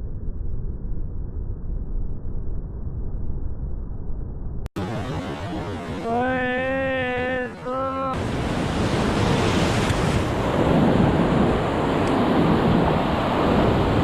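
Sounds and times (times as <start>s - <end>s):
held pitched tone: 4.8s - 8.2s
sea surf washing: 6.0s - 14.0s
wind buffeting microphone: 8.2s - 14.0s.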